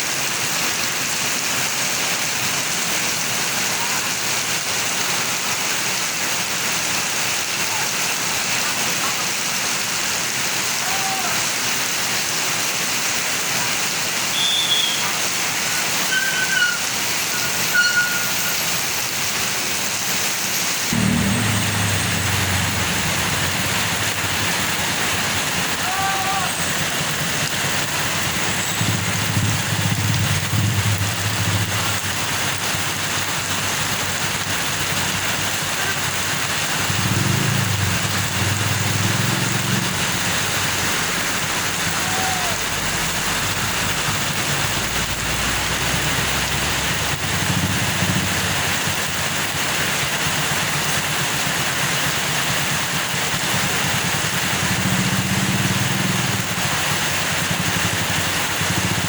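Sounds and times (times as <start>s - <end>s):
hiss of passing vehicles: 11.8s - 59.0s
engine rumble of passing vehicles: 11.9s - 59.0s.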